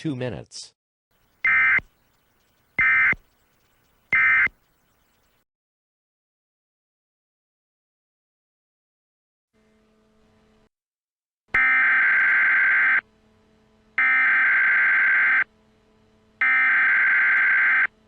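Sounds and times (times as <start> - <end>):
screeching digital data tones: 1.2 - 5.4, 16.4 - 17.9.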